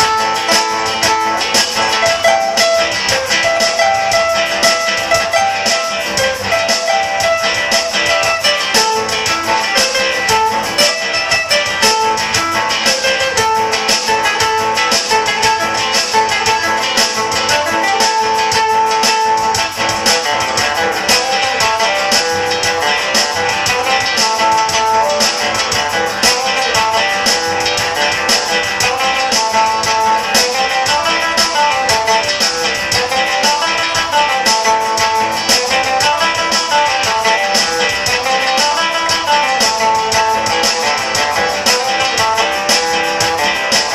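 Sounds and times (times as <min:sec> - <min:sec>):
fast strumming on string instruments: 0:00.0 - 0:43.9
melody over strumming: 0:00.0 - 0:43.9.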